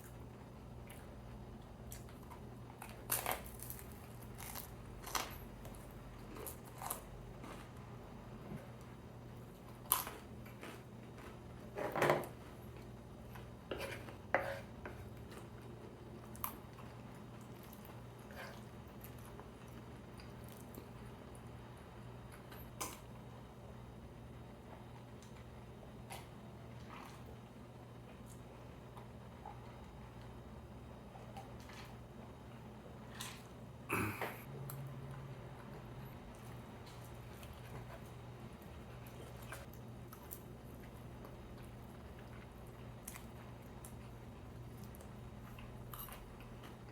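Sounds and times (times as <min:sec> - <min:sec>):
faint low hum: 0:00.0 - 0:46.9
chewing: 0:35.6 - 0:46.9.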